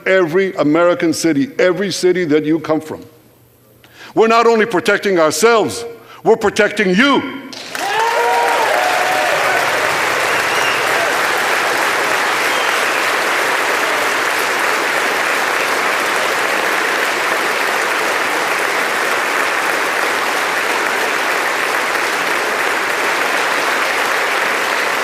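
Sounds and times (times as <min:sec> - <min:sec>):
audience applauding: 0:07.6 - 0:25.0.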